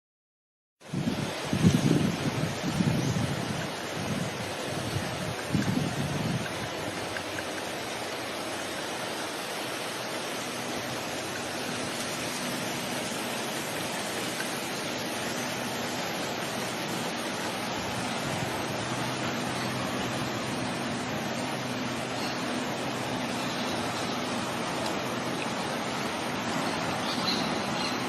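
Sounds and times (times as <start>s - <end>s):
steady rushing noise: 0.8s - 28.0s.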